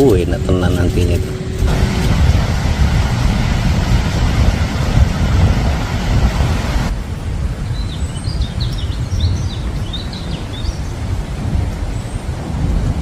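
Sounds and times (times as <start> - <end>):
wind buffeting microphone: 0.0 - 13.0
bird chirping: 7.6 - 11.0.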